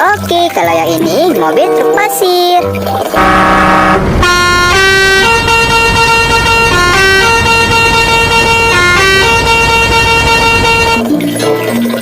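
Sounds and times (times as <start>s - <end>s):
musical bus horn melody: 3.1s - 11.1s.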